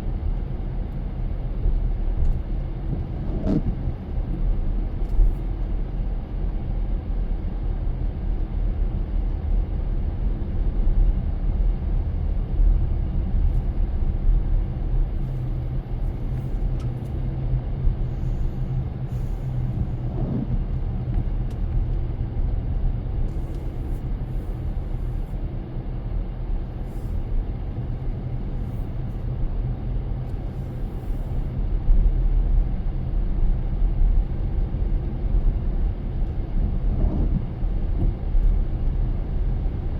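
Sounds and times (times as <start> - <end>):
car engine and tyre rumble: 0.0 - 39.9.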